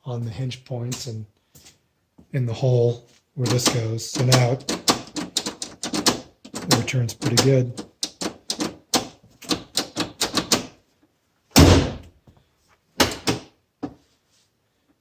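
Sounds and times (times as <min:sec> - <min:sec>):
door shutting thunk: 0:11.6 - 0:12.1.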